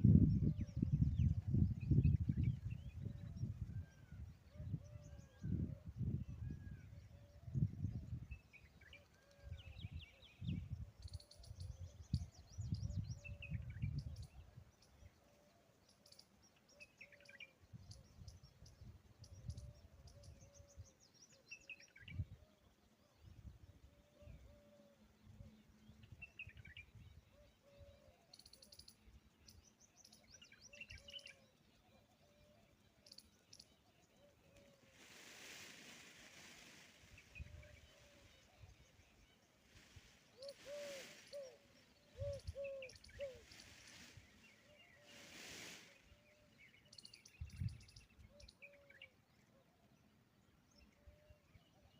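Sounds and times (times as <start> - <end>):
birds chirping and twittering: 0.0 - 51.9
burst of hiss: 34.9 - 37.3, 45.0 - 46.2.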